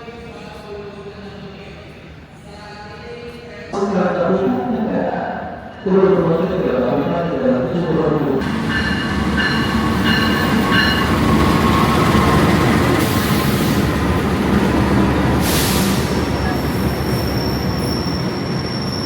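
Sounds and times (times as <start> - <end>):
train wheels rumbling on rails: 7.8 - 19.0
thin wheel squeal: 16.7 - 19.0.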